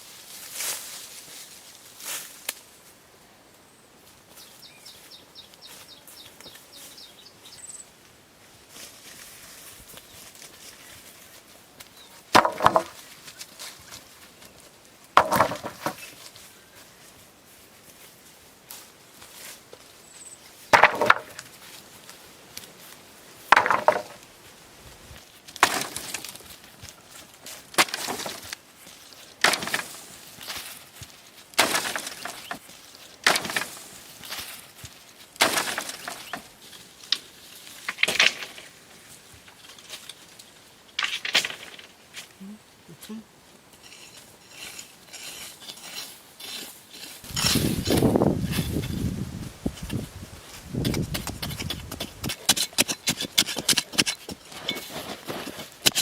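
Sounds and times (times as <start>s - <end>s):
hand tool strikes with scraping: 50.8s - 56.0s.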